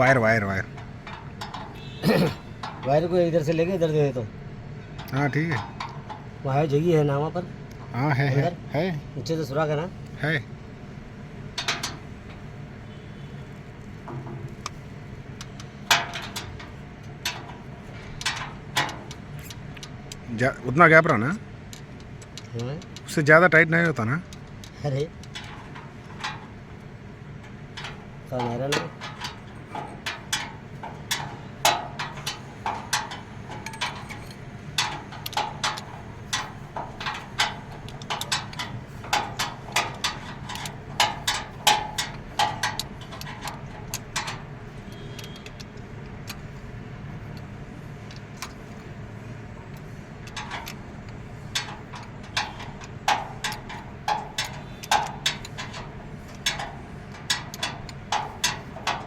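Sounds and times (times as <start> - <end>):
metallic clicks of hand tools: 15.4 - 59.0
steady low hum: 22.9 - 59.0.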